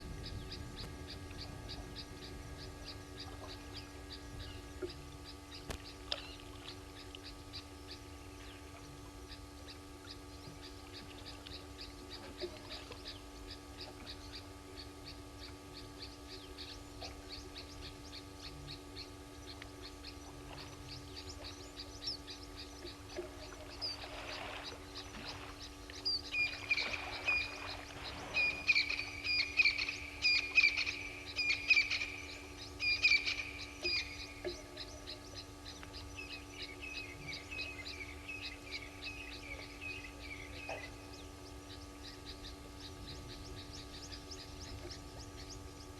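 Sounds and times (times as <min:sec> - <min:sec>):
faint bird chirping: 0:00.0 - 0:45.9
steady electrical hum: 0:00.0 - 0:45.9.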